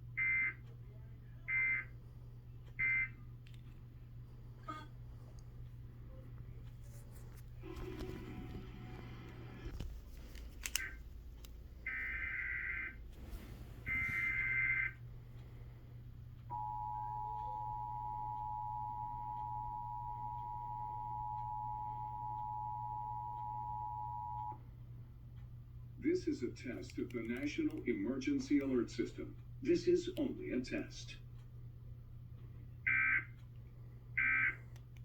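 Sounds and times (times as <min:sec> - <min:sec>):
steady two-tone attention signal: 0:16.5 - 0:24.6.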